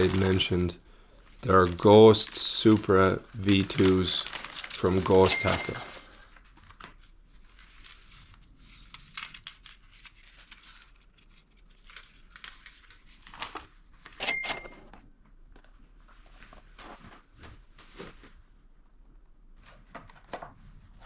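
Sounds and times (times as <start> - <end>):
plastic packaging crinkling: 0.0 - 0.8, 1.4 - 14.2.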